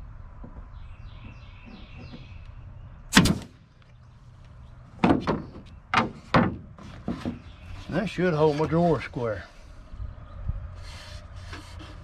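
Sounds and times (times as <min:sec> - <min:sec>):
wooden drawer scraping: 0:06.2 - 0:09.1.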